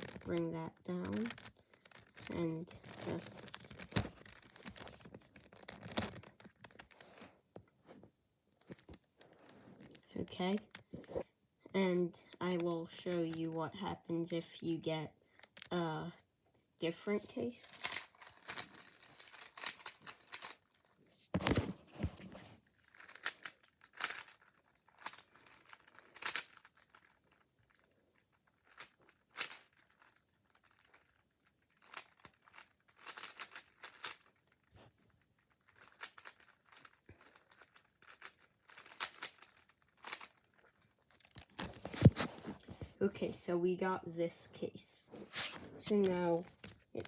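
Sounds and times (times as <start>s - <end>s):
puzzle cube clicking and scraping: 0.0s - 7.7s, 16.9s - 43.6s, 44.2s - 47.0s.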